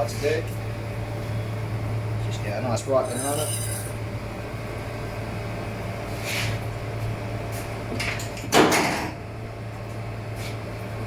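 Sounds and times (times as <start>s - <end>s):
steady low hum: 0.0s - 7.9s.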